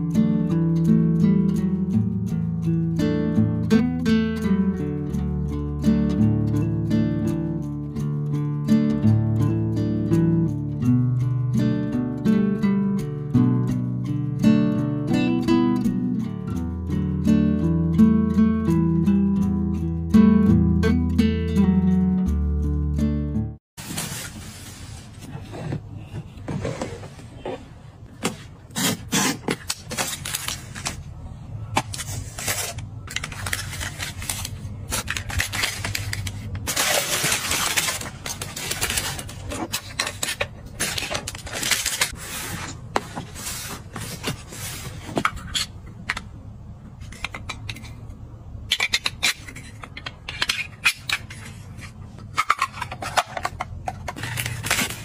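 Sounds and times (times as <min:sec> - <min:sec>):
rustling and scraping: 0:23.8 - 0:31.1, 0:31.7 - 0:46.2, 0:48.7 - 0:55.0.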